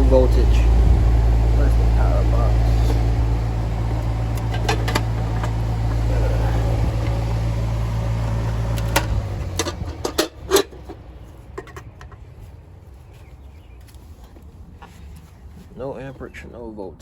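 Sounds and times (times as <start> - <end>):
air conditioner unit humming: 0.0 - 11.2
sharp clicks and knocks: 3.8 - 6.1, 8.3 - 12.2.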